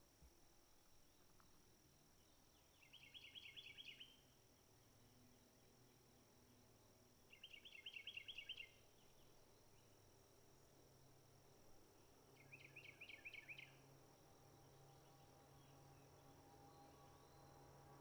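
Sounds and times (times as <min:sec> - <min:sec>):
songbird trilling: 0:02.7 - 0:04.2, 0:07.3 - 0:08.8, 0:12.4 - 0:13.8.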